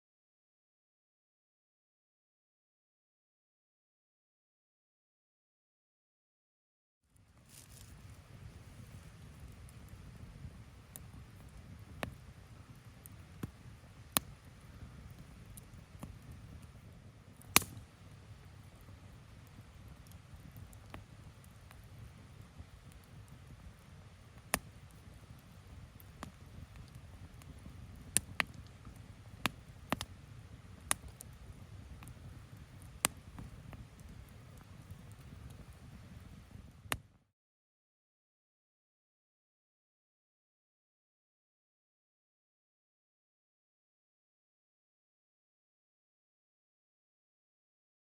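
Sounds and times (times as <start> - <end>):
bonfire crackling: 7.1 - 37.1
burning wood popping: 7.2 - 37.0
sharp pops: 17.5 - 17.8.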